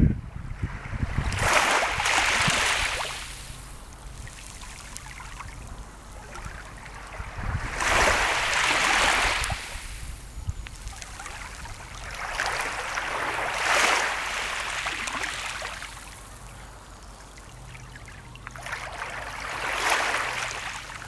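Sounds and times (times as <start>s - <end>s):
steady low rumble: 0.0s - 2.6s
sea waves washing in: 0.2s - 16.8s, 18.6s - 21.0s.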